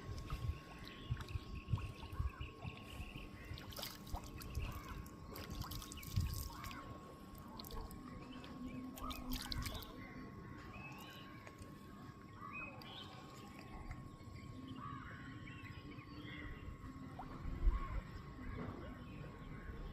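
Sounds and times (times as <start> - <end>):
river water lapping and trickling: 0.0 - 15.1.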